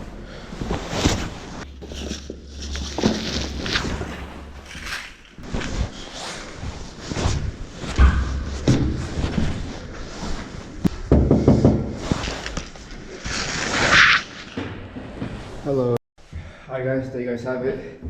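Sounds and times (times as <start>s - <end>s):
irregular knocks and thumps: 7.8s - 10.0s, 10.8s - 12.8s.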